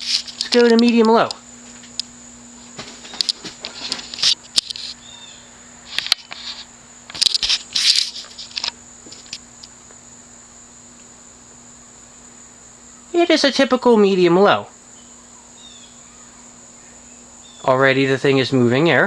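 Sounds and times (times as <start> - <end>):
brief rustling: 0.0 - 5.0, 5.9 - 9.4
ceiling fan motor humming: 0.0 - 19.0.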